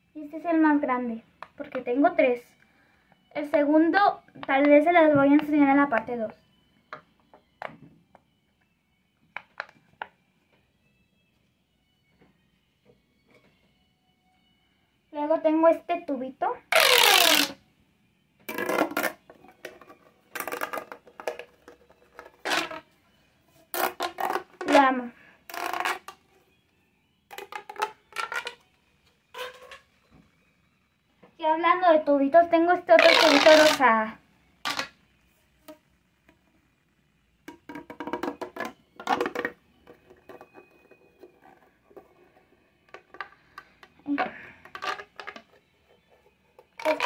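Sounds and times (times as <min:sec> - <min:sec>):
plastic pop tube crinkling: 0:16.7 - 0:17.6, 0:18.5 - 0:22.8, 0:23.7 - 0:24.9, 0:25.5 - 0:26.3, 0:27.3 - 0:28.6, 0:29.3 - 0:29.9, 0:33.0 - 0:33.9, 0:34.6 - 0:35.0, 0:37.4 - 0:40.6, 0:42.9 - 0:45.6, 0:46.6 - 0:47.0
pop tube toy crackling clicks: 0:16.7 - 0:17.6, 0:34.6 - 0:35.0.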